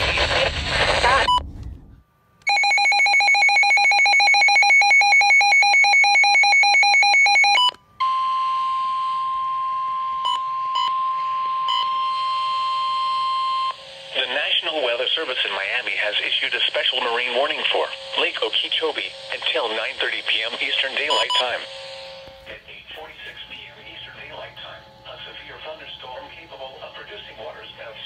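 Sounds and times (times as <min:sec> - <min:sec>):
steady alarm tone: 0:02.5 - 0:14.9, 0:15.8 - 0:22.5
rapid electronic beeping: 0:15.9 - 0:22.0.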